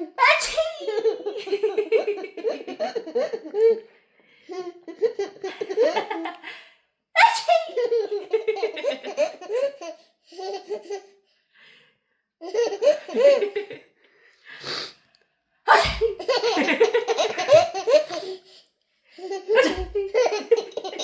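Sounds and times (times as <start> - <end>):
baby giggling and laughing: 0.0 - 3.8, 7.2 - 11.1, 12.4 - 13.7, 15.7 - 18.4, 19.2 - 21.0
baby sneezing: 0.2 - 0.8, 7.2 - 7.8, 15.7 - 16.3.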